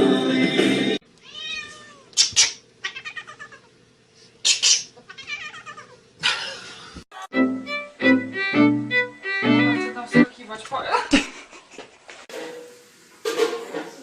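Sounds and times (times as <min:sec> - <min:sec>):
cat meowing and yowling: 0:01.2 - 0:02.1, 0:02.8 - 0:03.7, 0:05.1 - 0:06.0.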